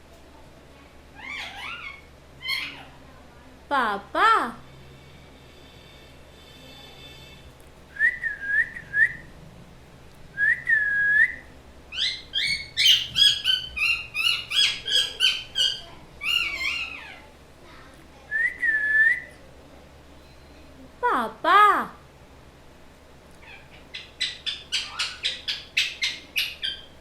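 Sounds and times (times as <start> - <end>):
parrot chirping: 1.2 - 3.0, 11.9 - 17.3, 23.4 - 27.0
parrot whistling: 10.4 - 17.1, 23.4 - 26.9.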